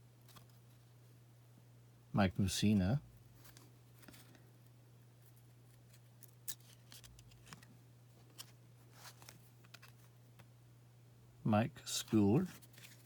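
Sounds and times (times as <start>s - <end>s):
trading cards clicking and rustling: 5.8s - 10.1s.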